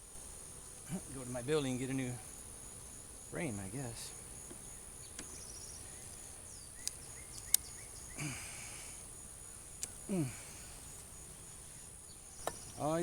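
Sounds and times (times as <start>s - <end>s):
sharp clicks: 6.8s - 7.7s
person grunting: 8.2s - 8.6s, 10.1s - 10.6s.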